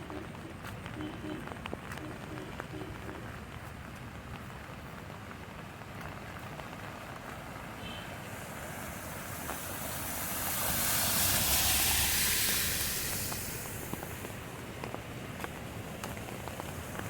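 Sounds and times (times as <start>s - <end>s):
steady rain: 0.0s - 17.0s
vehicle low rumble: 0.0s - 17.0s
tyre spray hiss: 7.7s - 17.0s.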